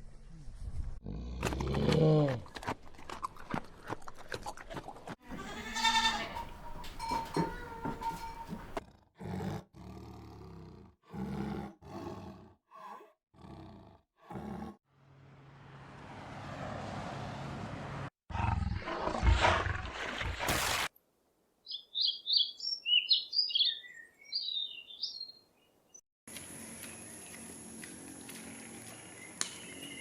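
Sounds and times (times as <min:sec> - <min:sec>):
rough growls: 0:08.8 - 0:14.8
animal roars: 0:09.2 - 0:14.8, 0:18.3 - 0:20.0.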